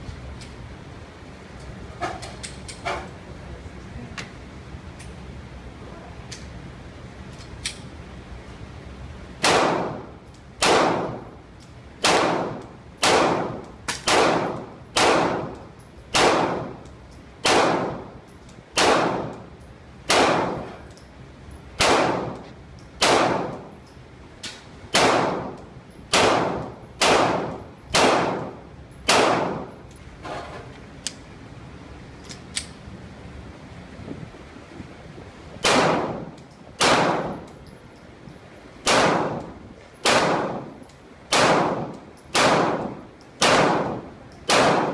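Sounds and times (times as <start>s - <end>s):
pistol shots: 9.4s - 11.3s, 12.0s - 16.8s, 17.4s - 18.1s, 18.8s - 19.5s, 20.1s - 20.8s, 21.8s - 22.4s, 23.0s - 23.7s, 24.9s - 29.7s, 35.6s - 37.5s, 38.8s - 44.9s.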